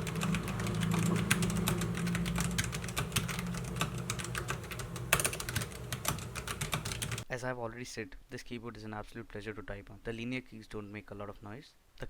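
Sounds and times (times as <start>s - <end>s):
mechanical keyboard typing: 0.0s - 7.2s
steady low hum: 0.0s - 7.3s.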